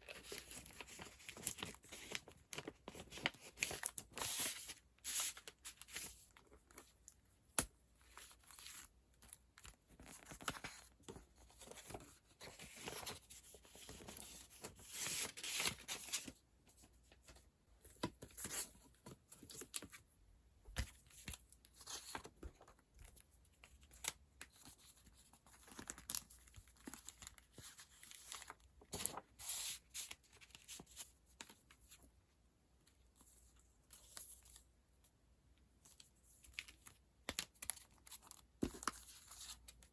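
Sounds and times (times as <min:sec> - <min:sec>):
paper rustling and crinkling: 0:00.0 - 0:06.9, 0:08.0 - 0:20.0, 0:20.8 - 0:32.0.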